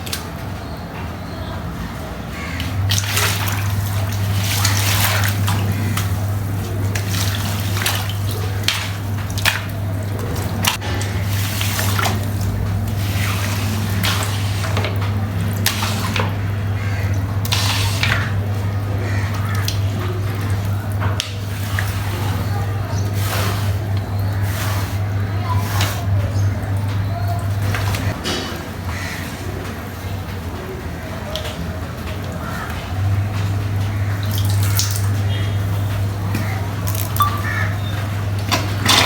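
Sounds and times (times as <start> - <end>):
water splashing and running: 2.4 - 28.2.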